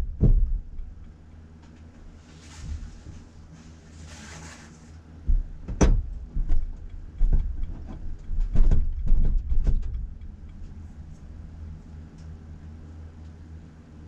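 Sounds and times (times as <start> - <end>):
suspension clicks and knocks: 0.0 - 2.0, 5.2 - 10.8
low road rumble: 0.0 - 4.0.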